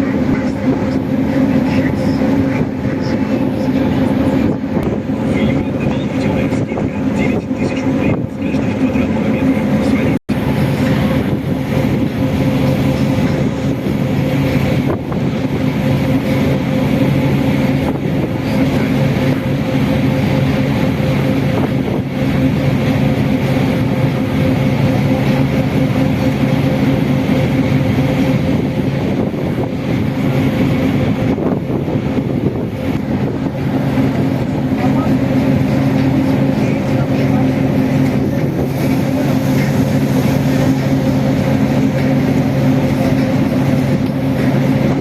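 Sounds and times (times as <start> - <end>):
boat engine droning: 0.0 - 45.0
broad rushing noise: 0.0 - 45.0.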